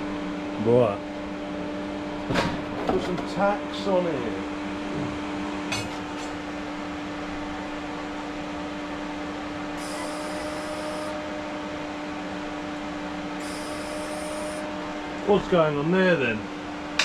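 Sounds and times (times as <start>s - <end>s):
welding set humming: 5.5s - 17.0s
high-pitched arc hiss: 9.8s - 11.2s, 13.4s - 14.6s.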